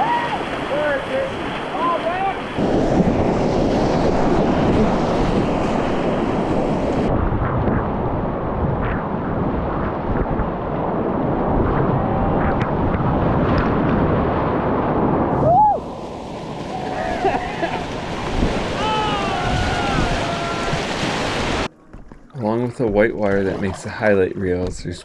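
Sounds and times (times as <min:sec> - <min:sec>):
whitewater rushing and splashing: 0:00.0 - 0:07.1, 0:10.4 - 0:21.7
wind buffeting microphone: 0:00.0 - 0:21.7.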